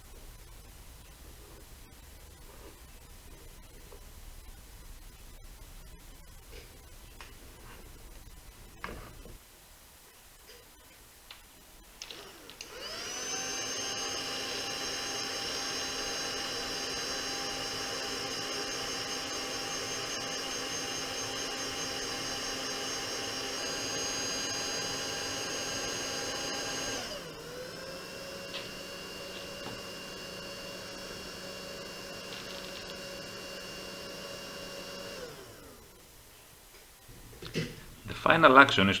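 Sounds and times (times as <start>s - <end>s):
small electric motor whining: 12.0s - 36.0s.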